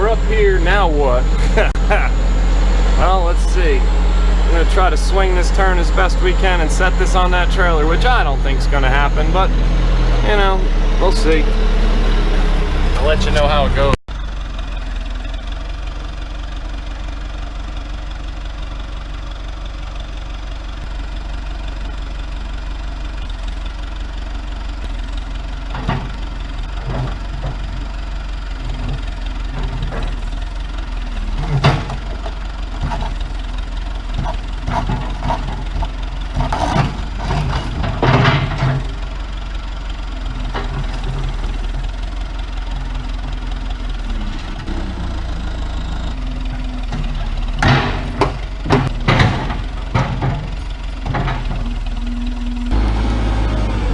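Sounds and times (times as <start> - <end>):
diesel engine running under load: 0.0 - 53.9
metal clanks and bangs: 24.9 - 28.0, 28.6 - 39.5, 46.5 - 52.8.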